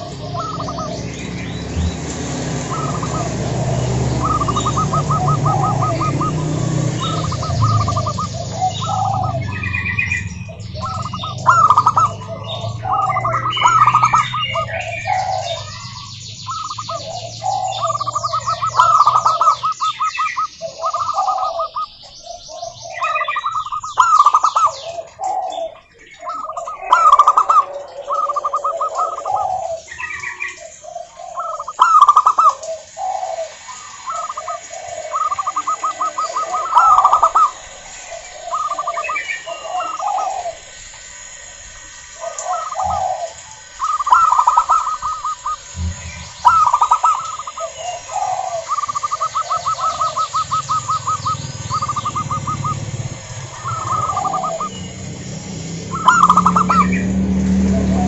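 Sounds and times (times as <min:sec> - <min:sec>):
low hum: 0:00.0 - 0:20.0, 0:32.7 - 0:58.0
doves cooing: 0:00.0 - 0:58.0.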